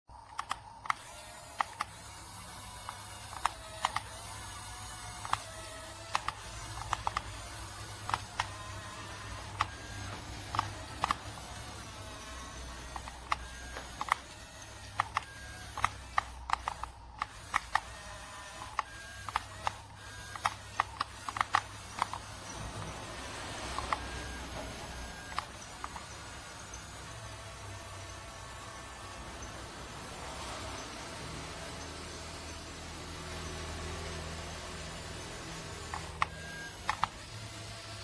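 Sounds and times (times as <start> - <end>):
plastic toy mechanism clicking: 0.1 - 22.9, 23.8 - 29.5, 34.1 - 38.0.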